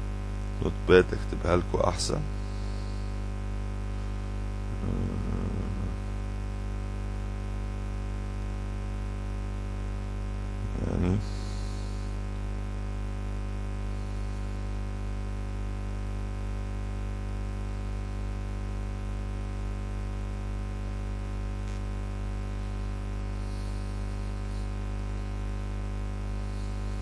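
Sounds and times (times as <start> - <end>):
electrical mains hum: 0.0 - 16.1, 20.2 - 27.0.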